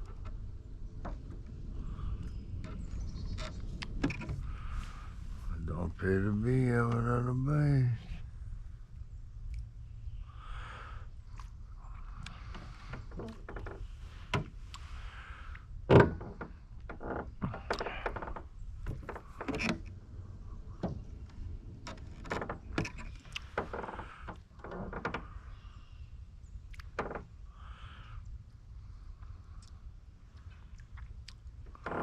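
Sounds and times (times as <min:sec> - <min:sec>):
irregular knocks and clunks: 0:02.6 - 0:05.0, 0:12.1 - 0:14.6, 0:15.8 - 0:19.9, 0:20.7 - 0:25.3.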